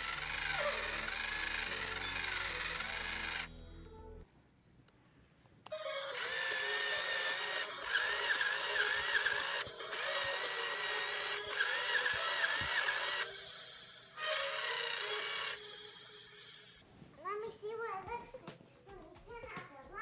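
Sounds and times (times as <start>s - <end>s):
toy motor whirring: 0.0s - 3.6s, 5.7s - 16.6s.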